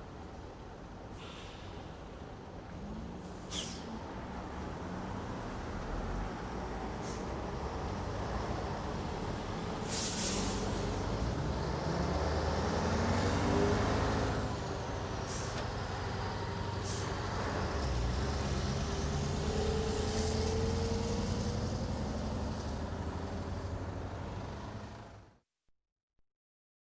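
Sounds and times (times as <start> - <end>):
large vehicle engines idling: 0.1 - 25.2
air brake hisses: 1.2 - 2.0, 3.3 - 4.0, 7.0 - 7.3, 9.8 - 11.1, 15.3 - 15.6, 16.8 - 17.2.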